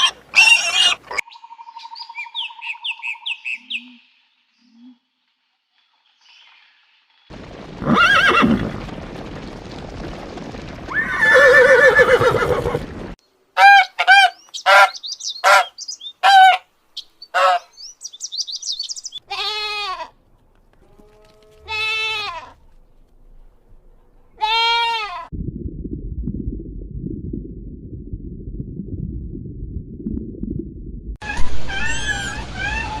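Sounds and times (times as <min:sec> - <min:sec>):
farm animal calls: 0:00.0 - 0:01.2, 0:13.6 - 0:16.6, 0:17.3 - 0:17.8
high chirping: 0:17.7 - 0:19.2.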